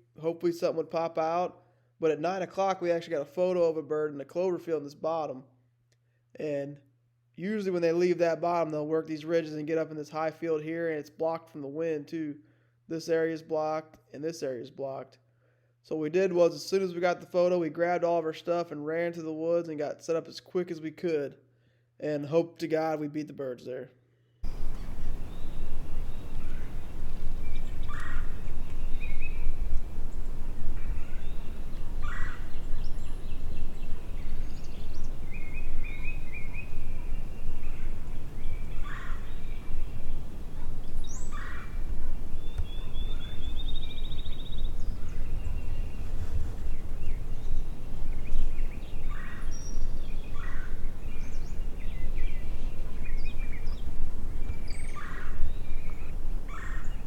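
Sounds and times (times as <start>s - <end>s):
songbirds chirping: 24.2s - 57.0s
wind rumble on microphone: 24.4s - 57.0s.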